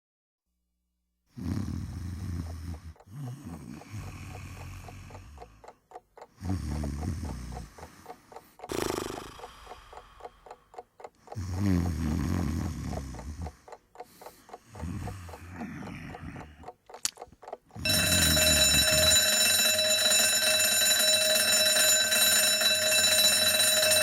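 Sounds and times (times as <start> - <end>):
snort: 1.3 - 4.5, 6.4 - 7.6, 8.7 - 10.2, 11.3 - 13.6
man snoring: 1.3 - 5.6, 6.4 - 7.8, 8.7 - 10.4, 11.4 - 13.7, 14.7 - 16.7
clock ticking: 1.9 - 24.0.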